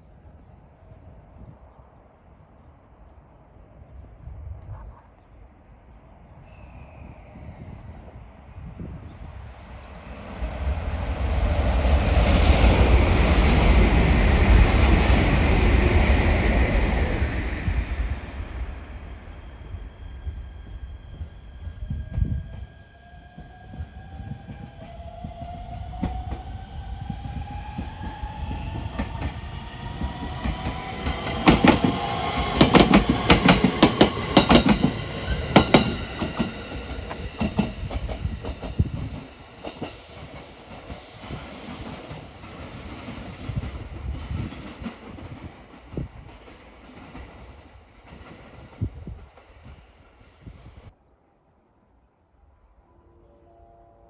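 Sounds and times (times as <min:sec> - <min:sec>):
train wheels clacking over rail joints: 0:30.2 - 0:43.8.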